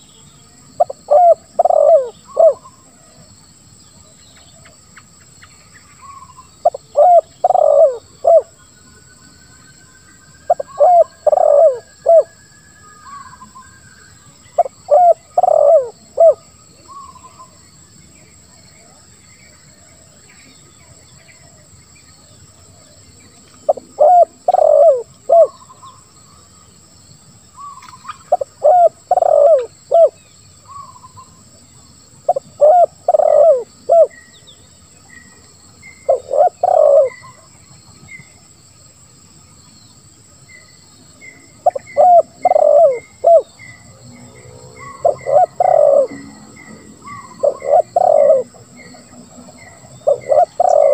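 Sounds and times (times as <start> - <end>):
dove cooing: 0.8 - 2.8, 6.1 - 8.6, 10.5 - 12.3, 14.6 - 17.4, 23.7 - 25.8, 27.6 - 31.0, 32.3 - 34.2, 35.8 - 37.4, 41.6 - 43.6, 44.2 - 50.9.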